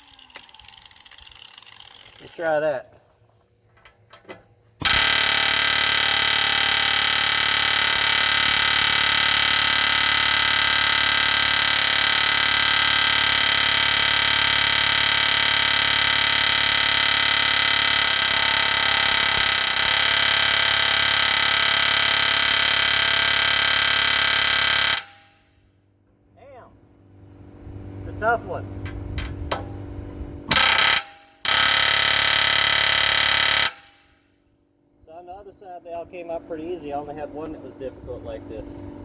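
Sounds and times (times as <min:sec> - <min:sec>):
pneumatic air hammer on metal: 0:00.0 - 0:02.4, 0:04.2 - 0:25.3, 0:30.5 - 0:34.1.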